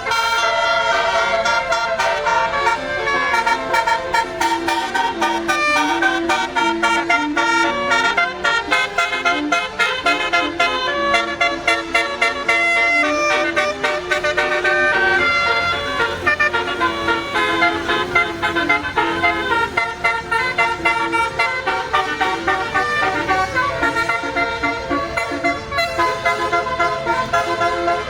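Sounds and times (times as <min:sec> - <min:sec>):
musical bus horn playing tune: 0:00.0 - 0:28.0.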